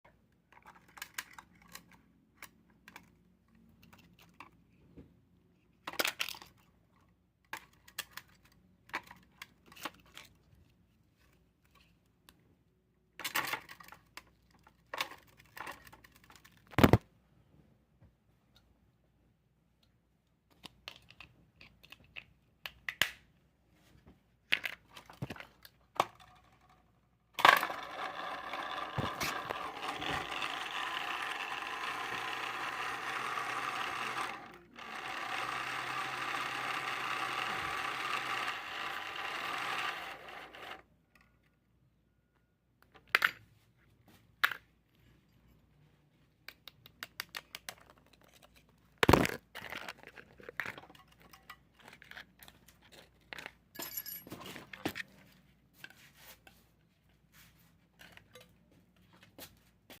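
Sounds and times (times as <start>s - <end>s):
clicks of small parts handled: 0.5s - 4.6s, 7.4s - 10.5s, 13.2s - 17.0s, 19.8s - 23.2s, 46.4s - 55.1s
small electric motor whirring: 27.5s - 40.8s.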